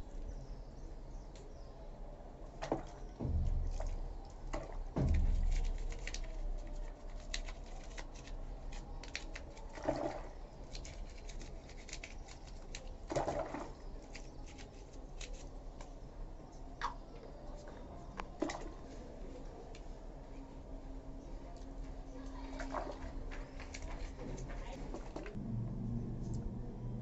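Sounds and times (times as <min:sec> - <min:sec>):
water sloshing and splashing: 0:02.5 - 0:08.0, 0:09.1 - 0:11.0, 0:13.0 - 0:14.3, 0:18.2 - 0:19.2, 0:22.2 - 0:25.4
clicks and scrapes of scrubbing: 0:04.6 - 0:15.9.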